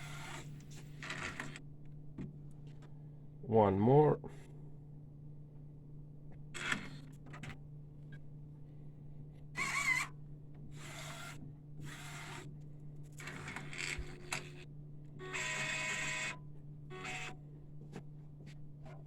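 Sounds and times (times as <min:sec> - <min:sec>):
printer motor whirring: 0:00.0 - 0:01.6, 0:09.6 - 0:10.1, 0:10.7 - 0:12.5, 0:13.1 - 0:14.6, 0:15.2 - 0:17.4.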